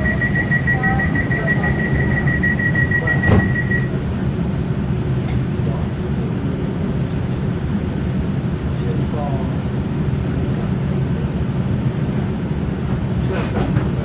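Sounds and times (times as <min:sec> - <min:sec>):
door warning buzzer beeping: 0:00.0 - 0:03.9
low train rumble: 0:00.0 - 0:14.0
thud: 0:03.1 - 0:03.9.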